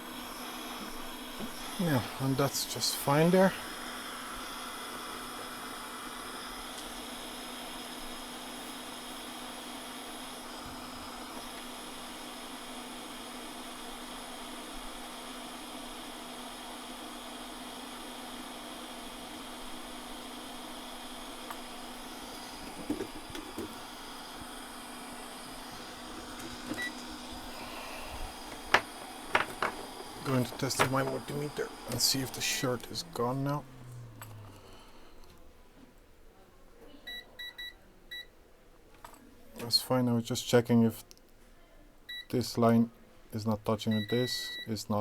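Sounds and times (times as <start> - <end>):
electric fan whirring: 0.0 - 35.8
low hum: 23.7 - 35.6.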